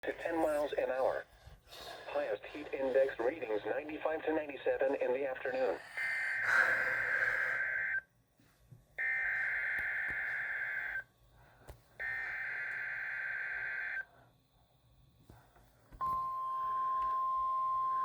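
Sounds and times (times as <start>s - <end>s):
raspy data bursts over radio: 2.1s - 8.0s.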